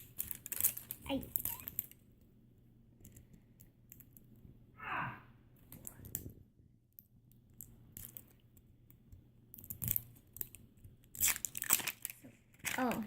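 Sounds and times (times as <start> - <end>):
plastic packaging crinkling: 0.0 - 2.0, 9.8 - 13.0.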